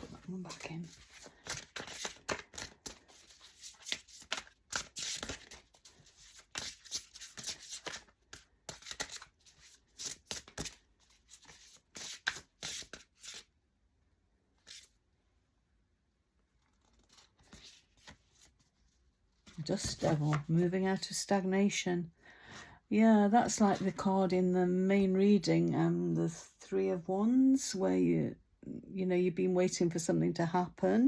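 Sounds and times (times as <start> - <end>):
cards being shuffled: 0.0 - 13.5, 16.6 - 20.6.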